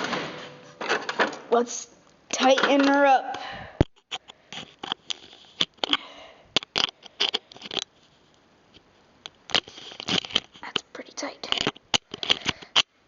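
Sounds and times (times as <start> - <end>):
plastic tripod clicks and scrapes: 4.0 - 6.0, 6.6 - 7.9, 9.5 - 10.8, 11.4 - 12.9.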